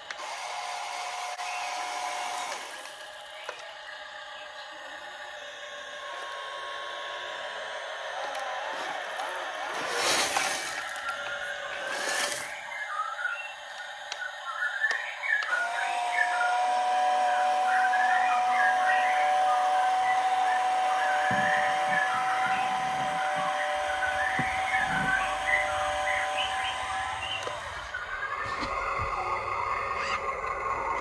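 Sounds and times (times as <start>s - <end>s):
electric hydraulic pump whine: 0.0s - 31.0s.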